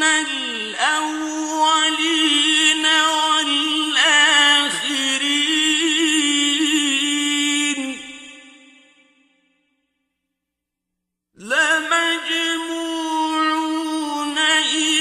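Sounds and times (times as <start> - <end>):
man reciting melodically: 0.0 - 8.8, 11.4 - 15.0.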